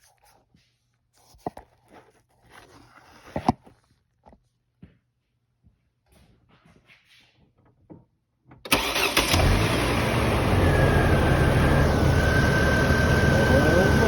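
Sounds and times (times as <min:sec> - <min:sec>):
car engine starting and idling: 0:08.7 - 0:14.0
thin steady whine: 0:10.1 - 0:14.0.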